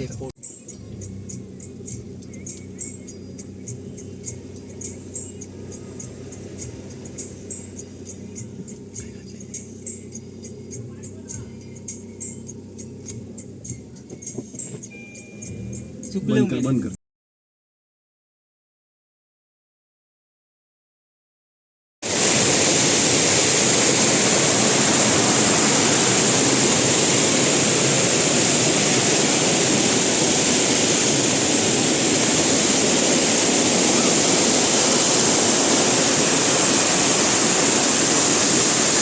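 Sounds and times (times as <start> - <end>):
waterfall rushing: 22.0 - 39.0.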